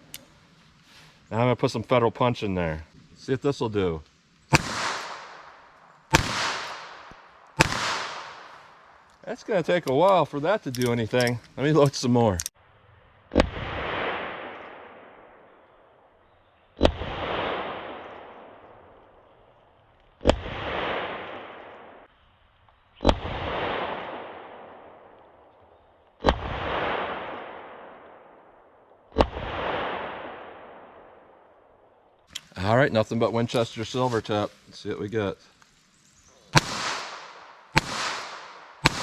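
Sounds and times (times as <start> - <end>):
revolver shots with echo: 4.5 - 8.6, 36.6 - 39.0.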